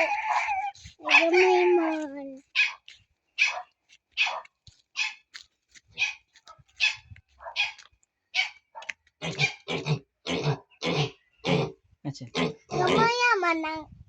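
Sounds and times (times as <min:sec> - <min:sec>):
small dog yapping: 0:00.0 - 0:01.8, 0:02.6 - 0:02.8, 0:06.8 - 0:07.8.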